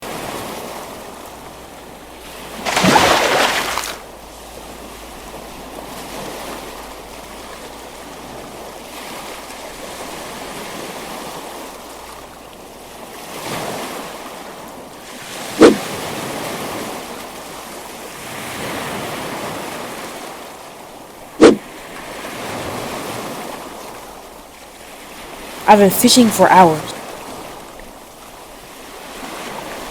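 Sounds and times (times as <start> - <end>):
water lapping and rushing: 0.1 - 25.4
loud water splash: 2.6 - 4.0
sharp water plops: 2.6 - 4.0, 15.6 - 15.8.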